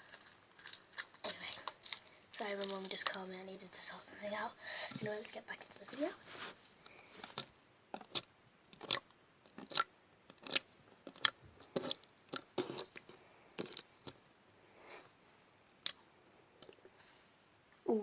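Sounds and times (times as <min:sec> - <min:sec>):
slime squished by hand: 0:07.3 - 0:14.2.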